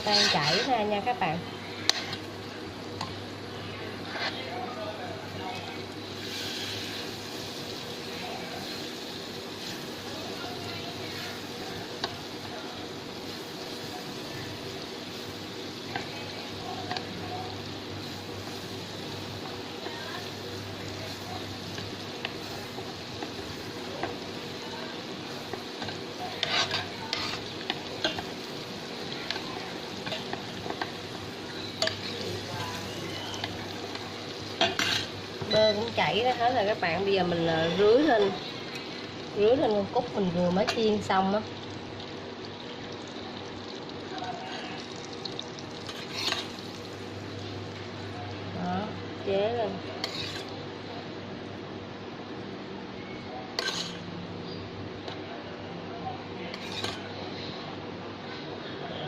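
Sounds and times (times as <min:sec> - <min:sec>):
utensil scraping a pan: 0:00.0 - 0:01.0, 0:01.7 - 0:02.3, 0:04.0 - 0:04.5, 0:25.8 - 0:28.5, 0:45.9 - 0:46.6, 0:50.0 - 0:50.6, 0:53.6 - 0:54.0, 0:56.5 - 0:57.1
butter sizzling in a pan: 0:00.0 - 0:50.9, 0:53.5 - 0:54.1, 0:56.5 - 0:57.1.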